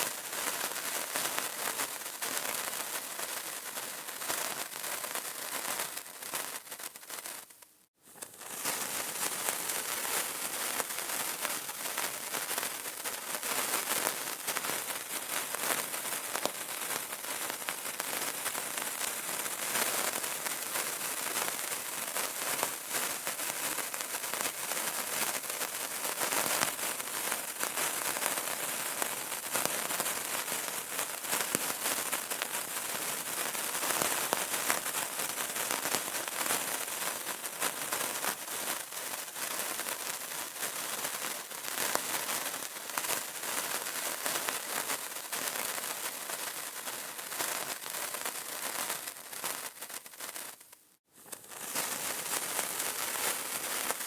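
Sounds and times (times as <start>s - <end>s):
candle crackling and popping: 0.0s - 54.0s
steady hiss: 37.5s - 54.0s.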